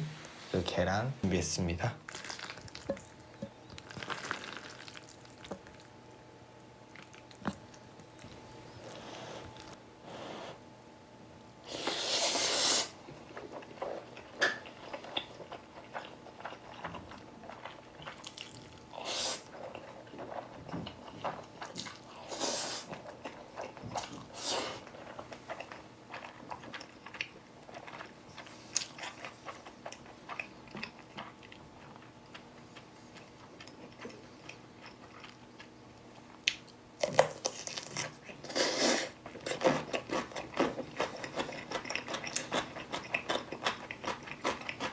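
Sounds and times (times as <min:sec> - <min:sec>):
biting and chewing with crunches: 0:39.2 - 0:44.9.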